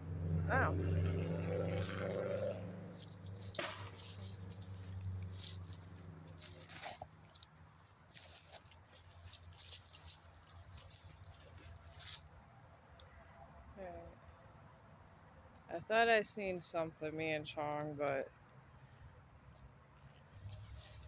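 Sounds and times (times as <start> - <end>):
vehicle engine hum: 0.0 - 21.0
light rustles and clicks: 3.0 - 12.3.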